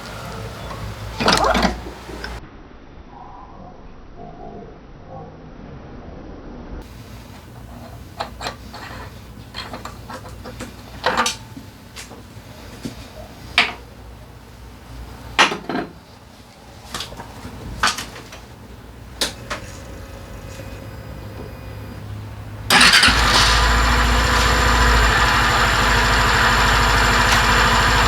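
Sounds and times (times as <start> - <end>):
metal tools clinking and clanking: 0.5 - 2.4.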